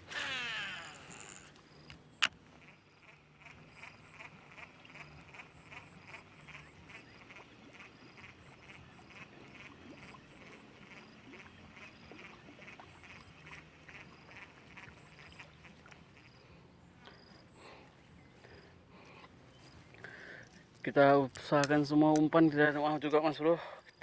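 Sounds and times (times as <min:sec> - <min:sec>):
short animal calls: 0:00.0 - 0:01.6
steady high-pitched buzz: 0:00.0 - 0:18.9.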